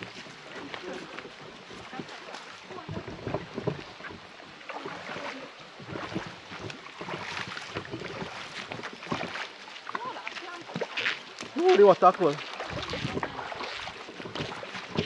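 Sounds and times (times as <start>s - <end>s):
feet splashing through water: 0.0s - 15.0s
rushing water: 0.0s - 15.0s.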